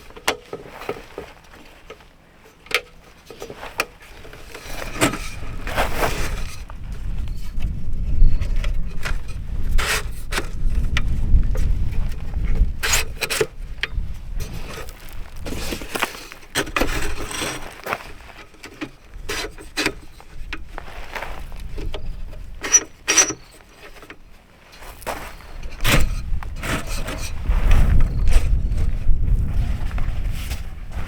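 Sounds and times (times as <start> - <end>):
objects knocking and scraping: 0.1 - 6.7, 21.8 - 31.0
wind rumbling on microphone: 4.3 - 16.1, 19.1 - 22.8, 24.9 - 31.0.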